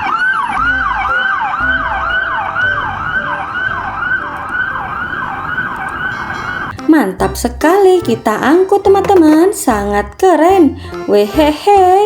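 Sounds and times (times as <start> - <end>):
toy electronic siren wailing: 0.0 - 6.7.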